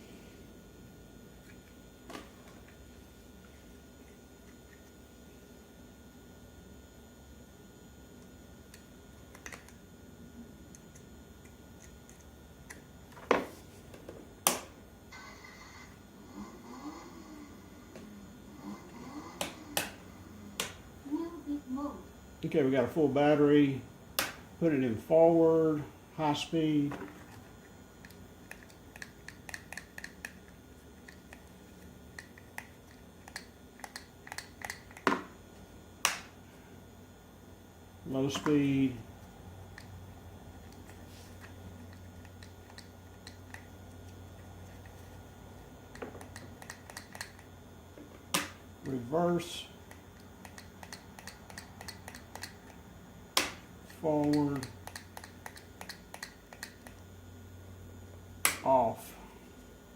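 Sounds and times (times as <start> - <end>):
sharp snaps: 36.0 - 36.3, 58.4 - 58.7.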